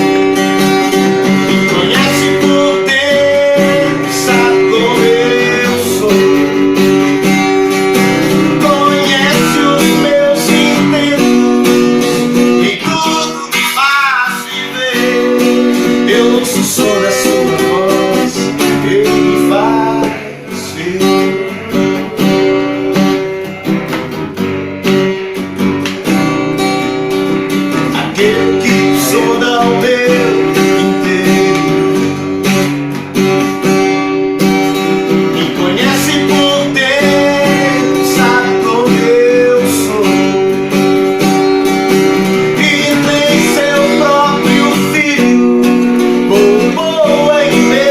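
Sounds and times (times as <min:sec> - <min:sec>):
acoustic guitar strumming: 0:00.0 - 0:47.9
person singing: 0:01.2 - 0:07.2, 0:08.0 - 0:23.4, 0:27.8 - 0:32.2, 0:35.2 - 0:40.8, 0:42.3 - 0:47.9.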